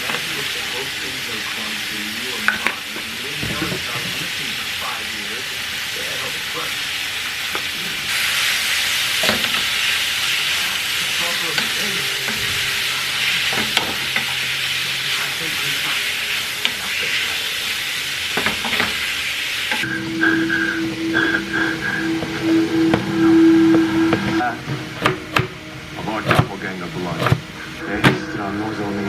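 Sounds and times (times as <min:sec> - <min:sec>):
food sizzling in a frying pan: 0:00.0 - 0:23.8.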